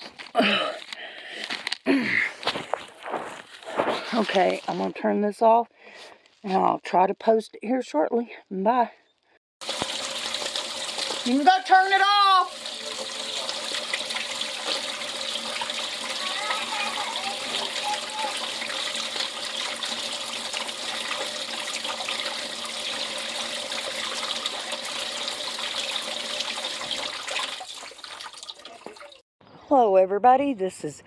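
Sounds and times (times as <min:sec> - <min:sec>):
water rushing through plumbing: 0:09.6 - 0:29.2.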